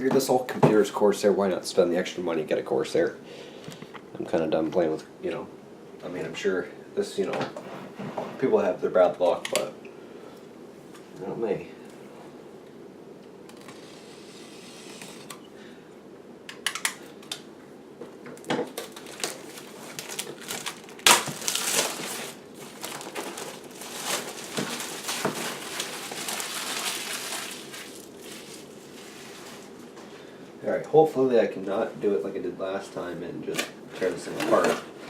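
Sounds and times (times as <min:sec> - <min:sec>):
plastic wrapping crinkling: 0:18.4 - 0:29.9.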